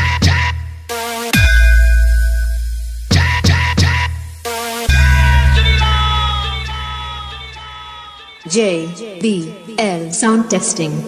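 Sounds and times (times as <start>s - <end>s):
deep sustained bass note: 1.4s - 3.2s, 4.9s - 7.8s
punchy electronic kick hits: 1.4s - 7.6s.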